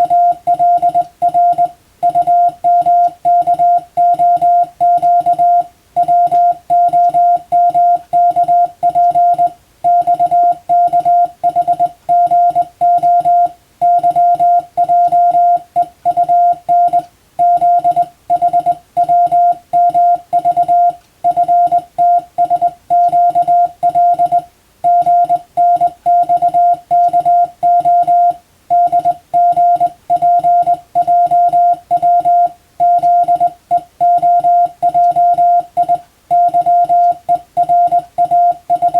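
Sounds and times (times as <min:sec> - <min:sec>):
morse code beeps: 0:00.0 - 0:38.9.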